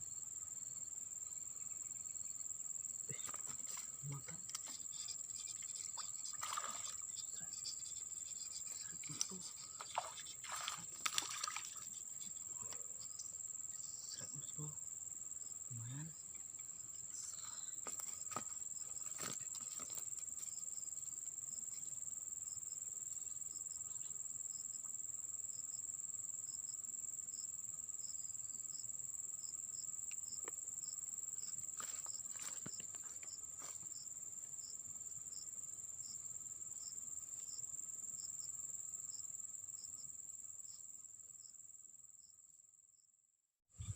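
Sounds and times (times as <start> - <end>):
insects trilling drone: 0.0 - 42.7
insect short chirps: 1.5 - 14.8.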